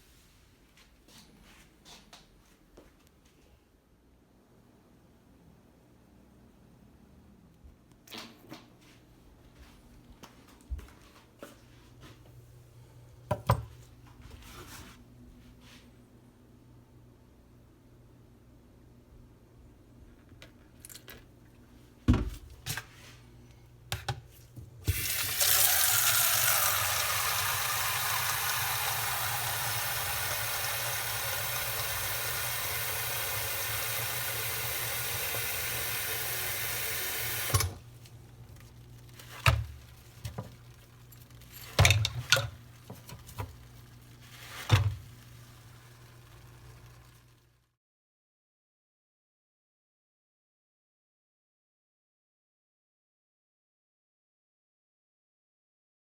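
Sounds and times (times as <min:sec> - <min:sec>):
tap running into a sink: 0:13.3 - 0:13.8, 0:24.8 - 0:47.4
knocks and clunks of handling: 0:38.6 - 0:43.7.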